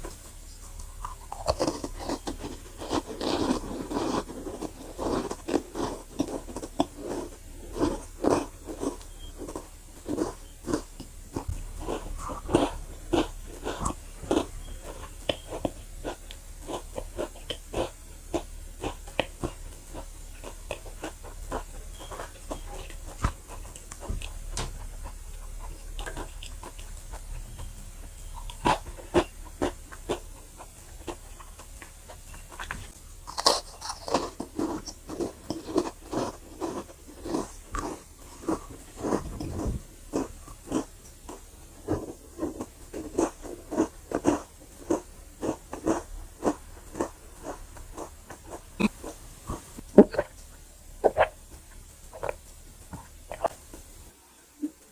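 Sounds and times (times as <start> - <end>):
cookies crunching while chewing: 0.0 - 54.2.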